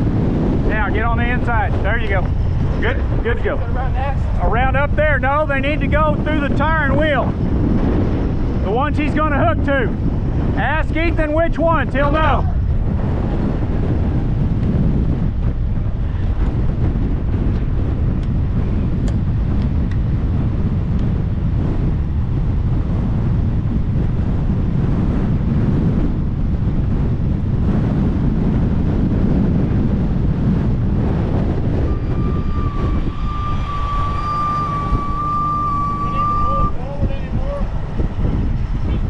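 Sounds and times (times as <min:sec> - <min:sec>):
strong wind buffeting microphone: 0:00.0 - 0:39.0
steady high tone: 0:31.8 - 0:37.9.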